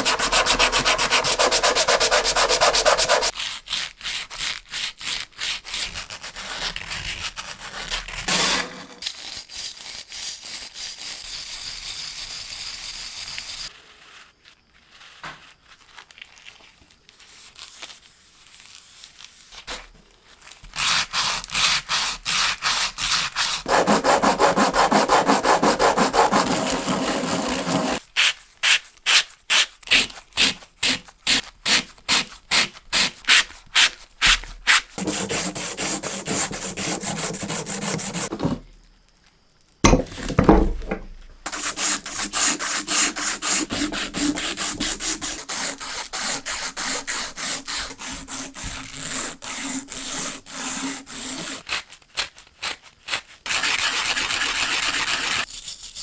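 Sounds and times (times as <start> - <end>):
sandpaper rubbing metal: 0.0 - 3.4, 7.7 - 9.9, 22.6 - 28.0, 34.7 - 38.4, 41.5 - 51.7, 52.6 - 56.0.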